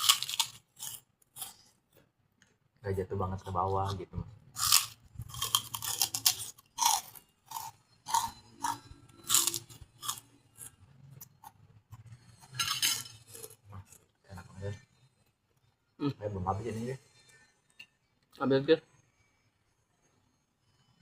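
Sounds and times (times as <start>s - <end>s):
person chewing crunchy food: 0.0s - 2.2s, 4.6s - 14.2s.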